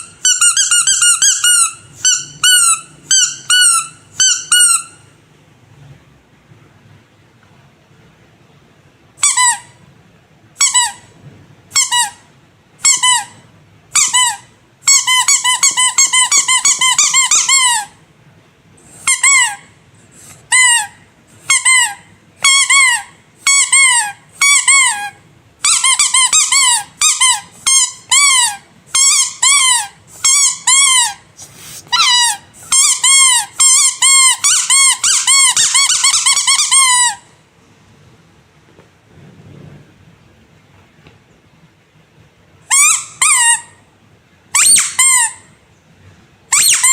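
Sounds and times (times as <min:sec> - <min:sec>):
rubber squeaky toy squeaking: 0:00.0 - 0:05.1, 0:09.2 - 0:09.8, 0:10.6 - 0:18.0, 0:19.0 - 0:37.4, 0:42.6 - 0:43.8, 0:44.5 - 0:45.6, 0:46.5 - 0:46.9.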